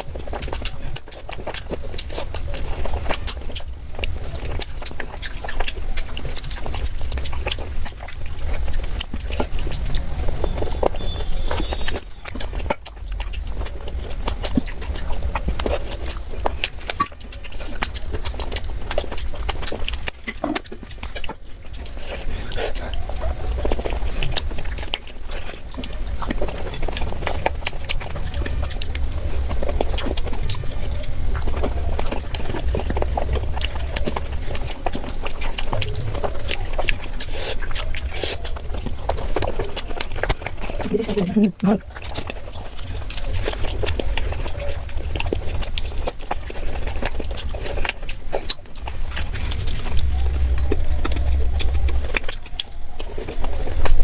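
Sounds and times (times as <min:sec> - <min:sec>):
chewing and wet lip smacks: 0:00.0 - 0:54.0
low steady hum: 0:00.0 - 0:54.0.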